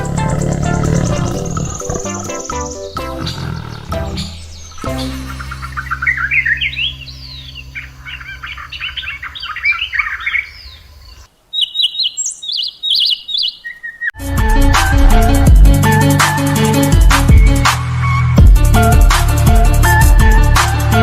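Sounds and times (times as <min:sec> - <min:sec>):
small birds chirping: 0:00.0 - 0:14.2
electronic music with a beat: 0:14.2 - 0:21.0.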